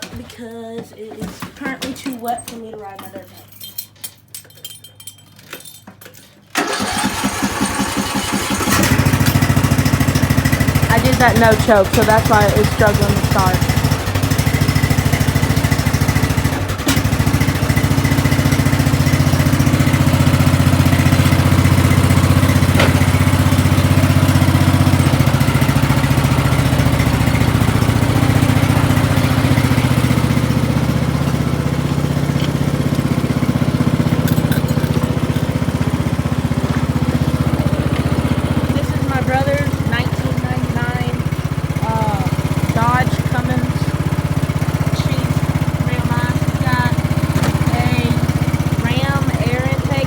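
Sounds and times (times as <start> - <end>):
lawn mower engine running: 6.5 - 50.0.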